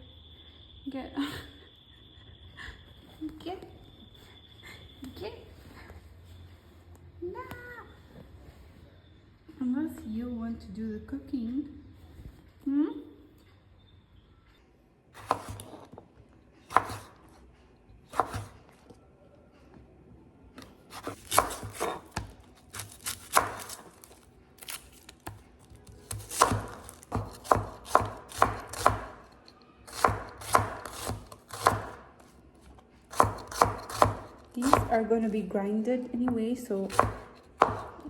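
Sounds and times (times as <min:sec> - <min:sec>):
knife chopping on cutting board: 0:15.2 - 0:15.9, 0:16.7 - 0:17.2, 0:18.1 - 0:18.6, 0:20.9 - 0:29.3, 0:29.9 - 0:32.3, 0:33.1 - 0:35.1, 0:36.3 - 0:38.0.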